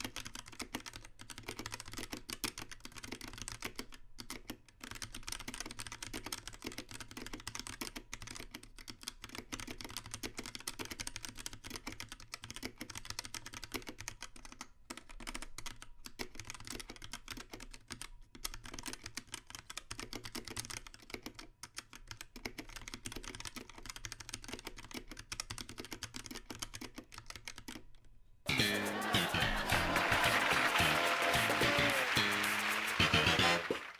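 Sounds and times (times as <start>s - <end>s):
mechanical keyboard typing: 0.0s - 29.4s
music: 28.5s - 33.9s.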